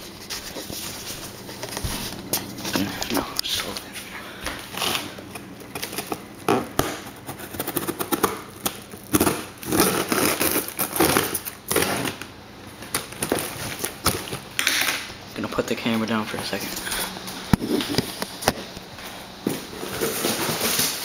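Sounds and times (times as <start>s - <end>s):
packaging crinkling and tearing: 4.7s - 15.0s.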